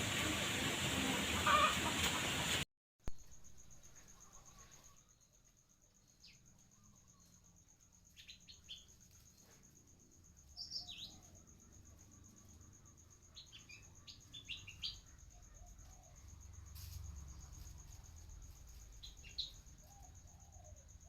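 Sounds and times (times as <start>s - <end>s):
songbird chirps: 3.1s - 9.7s, 10.3s - 11.9s, 12.9s - 16.3s.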